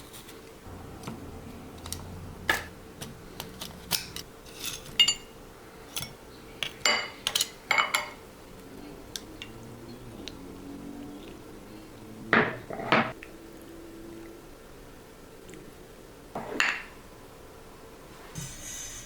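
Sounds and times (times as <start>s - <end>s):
dishes and metal utensils clinking: 1.8s - 8.3s.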